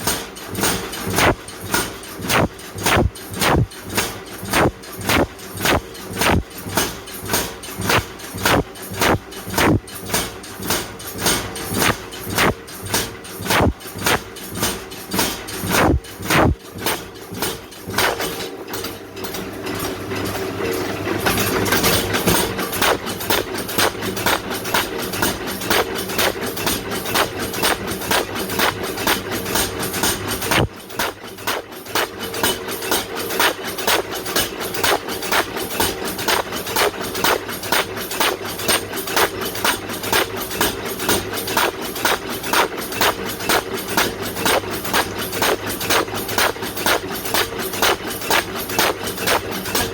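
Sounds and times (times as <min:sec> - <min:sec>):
machine hum: 0:01.1 - 0:01.4, 0:02.2 - 0:03.7, 0:04.5 - 0:06.4, 0:07.8 - 0:09.8, 0:11.8 - 0:12.6, 0:13.4 - 0:14.2, 0:15.6 - 0:16.6, 0:18.0 - 0:18.2, 0:27.0 - 0:28.8, 0:30.4 - 0:32.1
steady rushing noise: 0:02.3 - 0:03.7, 0:04.6 - 0:06.4, 0:07.8 - 0:09.8, 0:13.5 - 0:14.2, 0:15.7 - 0:16.6, 0:30.5 - 0:31.6.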